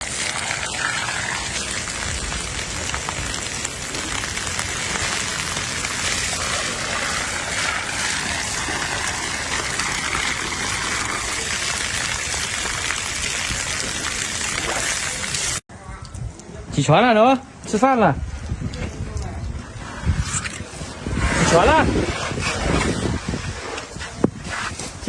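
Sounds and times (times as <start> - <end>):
hiss of water: 0.0 - 15.6.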